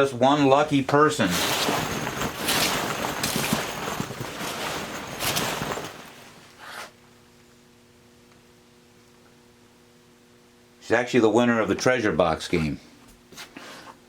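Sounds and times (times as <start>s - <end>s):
faint electrical hum: 0.0s - 14.0s
objects rustling and scraping: 0.4s - 7.0s.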